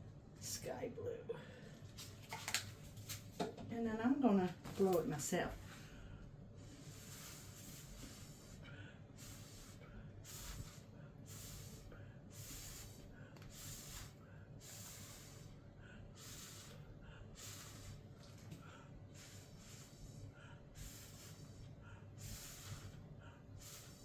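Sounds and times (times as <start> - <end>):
person blowing puffs of breath: 5.8 - 24.0.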